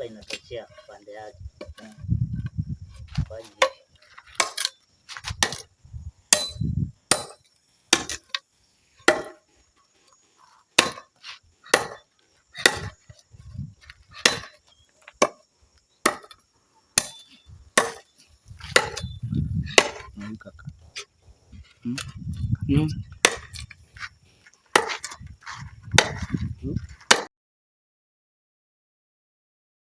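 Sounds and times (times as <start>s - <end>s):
blade chopping into wood: 3.6s - 5.7s, 6.3s - 8.4s, 9.0s - 9.4s, 10.8s - 15.4s, 16.0s - 16.4s, 17.0s - 20.2s, 23.2s - 24.1s, 24.7s - 27.3s.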